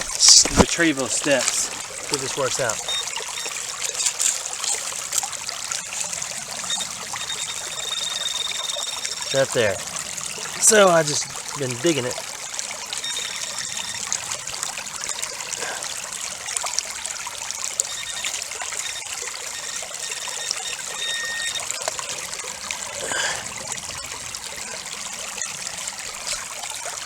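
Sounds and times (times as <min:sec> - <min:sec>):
digging knocks in creek bed: 0:00.0 - 0:02.7
creek water trickling over rocks: 0:00.0 - 0:27.0.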